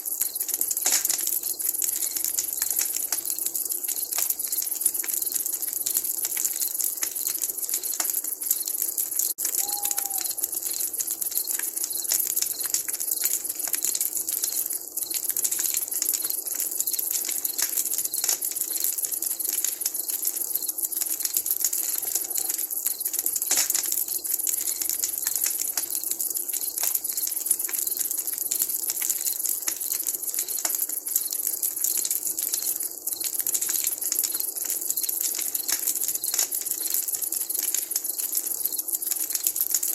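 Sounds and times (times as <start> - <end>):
campfire crackling and popping: 0.0 - 39.9
owl hoot: 9.5 - 10.4, 22.0 - 22.6.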